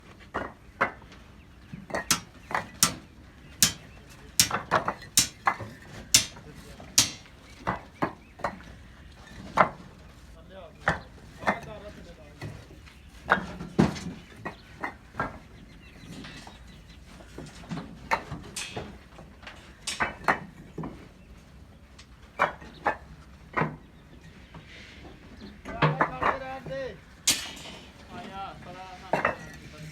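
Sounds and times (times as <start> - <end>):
sharp irregular clicks and knocks: 1.9 - 3.0, 3.6 - 7.8.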